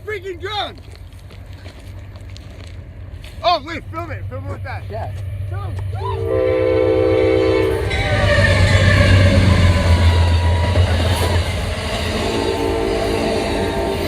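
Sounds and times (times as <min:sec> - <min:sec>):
train wheels rumbling: 0:00.0 - 0:14.0
train horn: 0:05.9 - 0:14.0.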